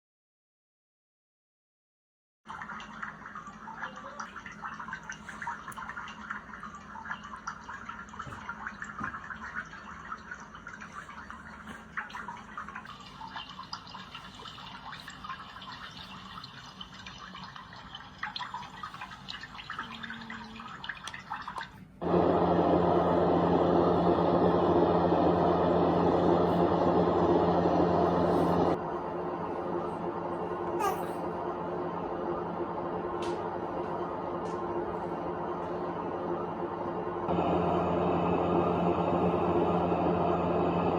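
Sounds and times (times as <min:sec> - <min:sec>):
running water with drips: 0:02.5 - 0:22.1.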